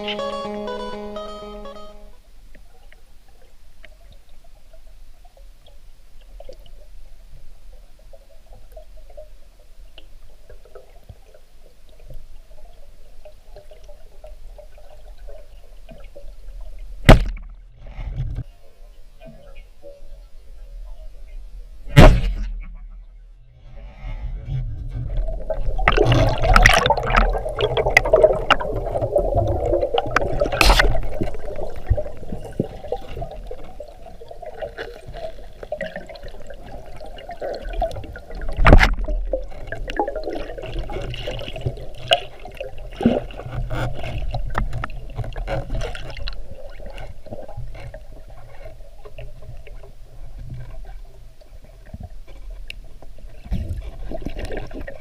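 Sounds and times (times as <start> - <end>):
water gurgling and sloshing: 2.2 - 55.0
sharp clicks underwater: 25.4 - 33.8.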